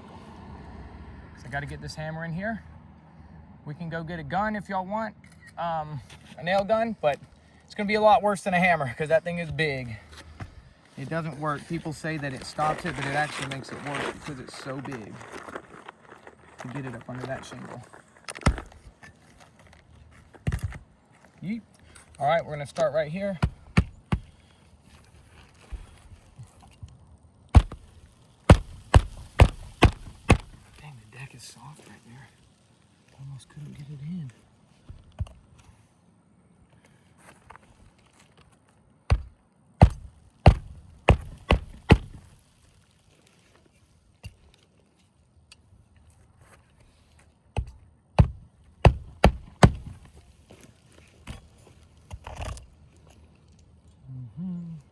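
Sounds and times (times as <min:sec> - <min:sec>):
hammer driving a nail into wood: 0:23.4 - 0:24.4, 0:27.6 - 0:30.8, 0:39.1 - 0:42.4, 0:47.6 - 0:50.2.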